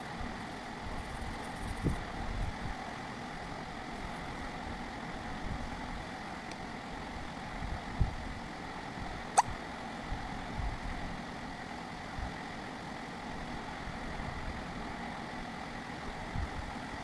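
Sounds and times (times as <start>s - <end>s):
steady background hum and rumble: 0.0s - 17.0s.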